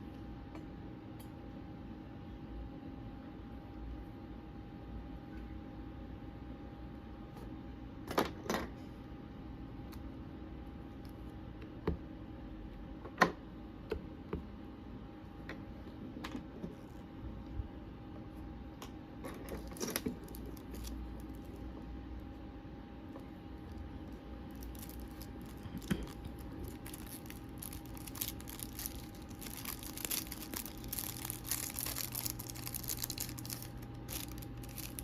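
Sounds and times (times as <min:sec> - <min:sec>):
faint steady hum: 0:00.0 - 0:35.0
small hard items clicking: 0:24.5 - 0:35.0.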